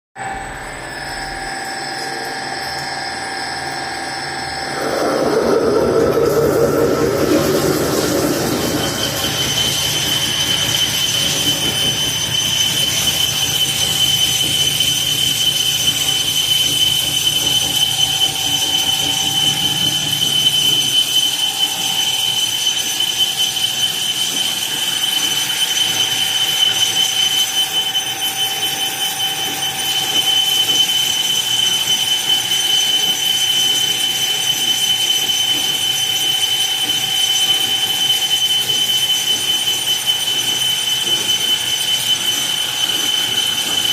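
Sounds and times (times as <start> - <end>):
drill bit squealing in steel: 0.3 - 43.9
low rumble: 4.6 - 10.4.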